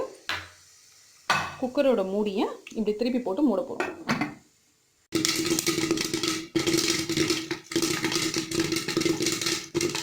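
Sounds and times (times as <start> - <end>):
corn kernels popping in oil: 5.1 - 10.0.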